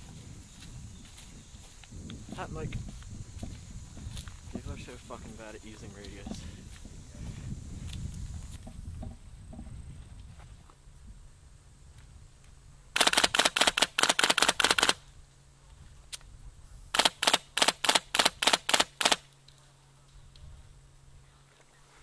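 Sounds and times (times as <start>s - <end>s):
airsoft rifle rapid shots: 13.0s - 15.0s, 16.9s - 19.3s.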